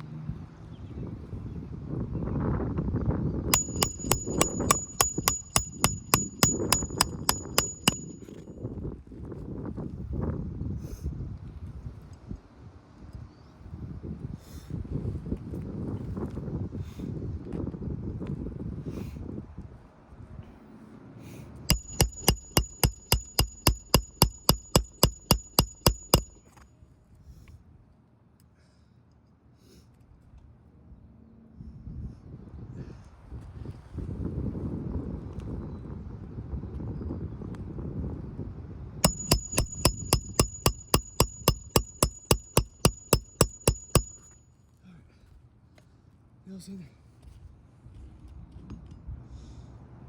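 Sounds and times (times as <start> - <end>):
hammer blows on metal: 3.6 - 8.3, 21.7 - 26.4, 39.0 - 44.4
sharp metallic clicks: 3.6 - 8.3, 21.7 - 26.4, 39.0 - 44.3
faint steady high ring: 3.6 - 8.4, 21.7 - 26.4, 39.0 - 44.4.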